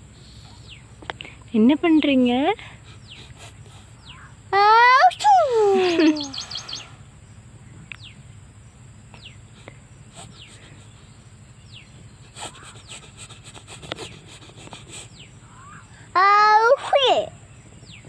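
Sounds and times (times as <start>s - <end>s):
birds chirping: 0.0s - 18.0s
bird trill: 4.0s - 7.0s, 15.0s - 16.1s.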